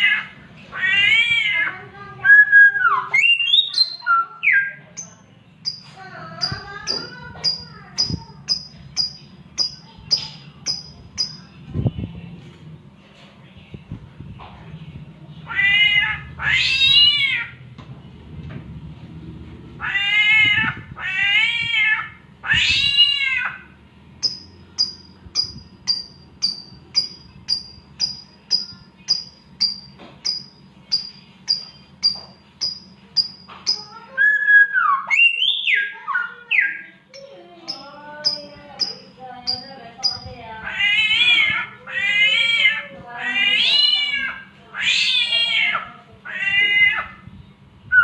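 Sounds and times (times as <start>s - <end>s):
bird chirping sharply: 2.7s - 11.5s, 24.2s - 36.8s, 37.6s - 40.4s
bird meow-like calls: 15.4s - 17.6s, 19.8s - 23.7s, 37.7s - 47.2s.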